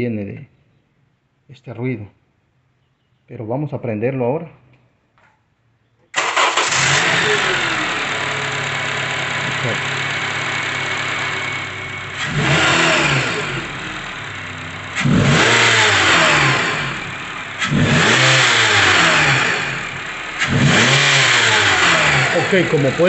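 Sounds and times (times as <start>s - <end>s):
car engine idling and revving: 6.2s - 23.0s.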